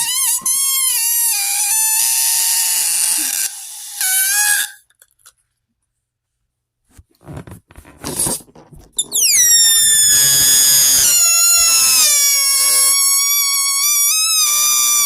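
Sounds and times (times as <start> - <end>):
balloon squealing air escaping: 0.0 - 4.8, 9.0 - 15.0
knocks and rustles: 6.9 - 9.1.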